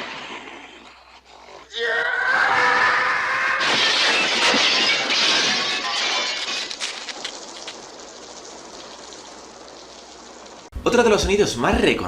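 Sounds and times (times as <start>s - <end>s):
crash with crackling and clattering: 3.6s - 10.7s.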